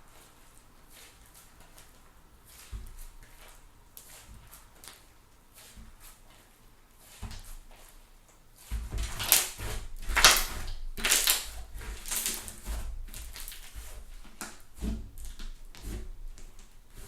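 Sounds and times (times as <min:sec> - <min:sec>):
slime crackling and popping: 0:09.1 - 0:13.7.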